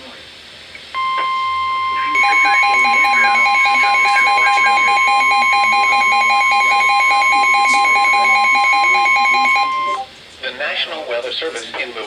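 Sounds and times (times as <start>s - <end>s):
rapid pulsing electronic beeps: 1.0s - 10.1s
steady high alarm tone: 1.0s - 10.1s.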